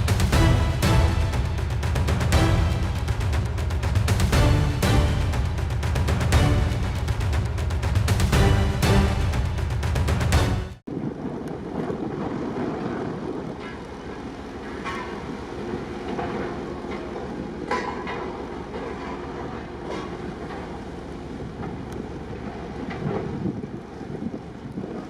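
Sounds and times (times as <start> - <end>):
steady low rumble: 0.0 - 14.6
wind buffeting microphone: 10.9 - 25.0.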